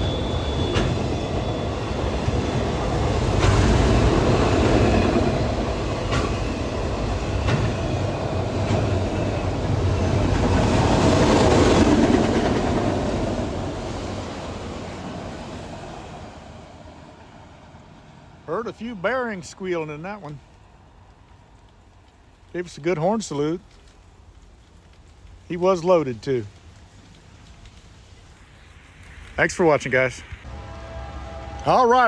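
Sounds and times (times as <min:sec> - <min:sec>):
high wheel squeal: 0:00.0 - 0:12.2, 0:18.5 - 0:26.1
freight train rumbling past: 0:00.0 - 0:32.0.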